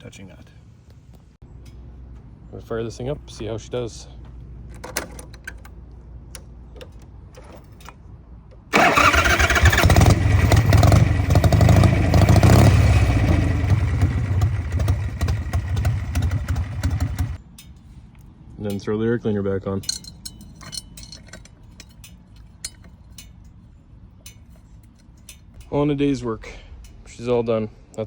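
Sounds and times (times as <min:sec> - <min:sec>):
motorcycle engine starting and running: 0:08.7 - 0:17.4.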